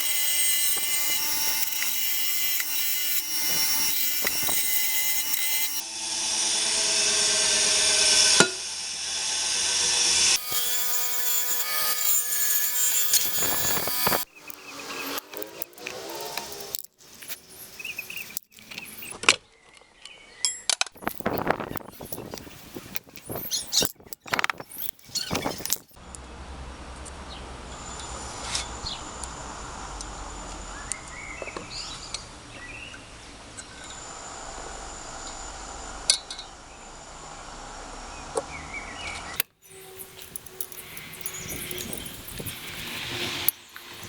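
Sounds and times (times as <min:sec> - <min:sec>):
metal tools clinking: 0:10.4 - 0:19.1, 0:21.0 - 0:26.0, 0:39.6 - 0:44.0.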